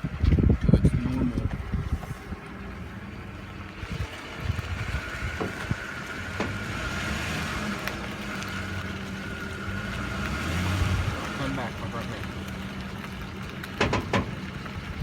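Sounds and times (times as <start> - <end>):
pickup engine humming: 0.0 - 15.0
pops from truck front end: 3.8 - 15.0.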